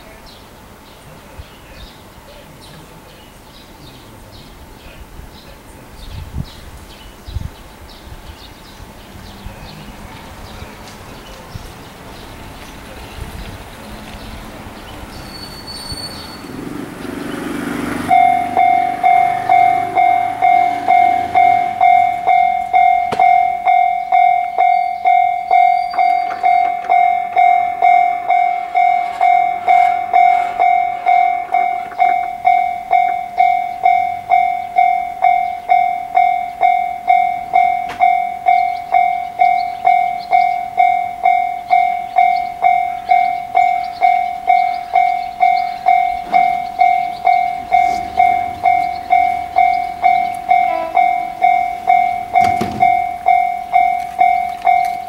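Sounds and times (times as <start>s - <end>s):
level crossing warning bell: 17.4s - 55.0s.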